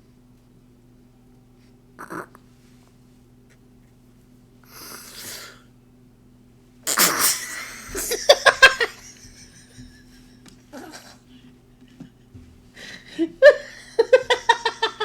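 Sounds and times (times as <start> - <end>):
man laughing: 7.5 - 11.2, 11.9 - 15.0.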